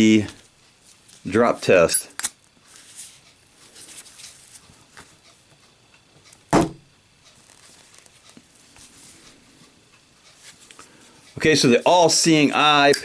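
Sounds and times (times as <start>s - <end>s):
faint handling sounds: 0.0s - 6.4s, 7.2s - 13.0s
lighter landing with thud: 6.5s - 6.8s.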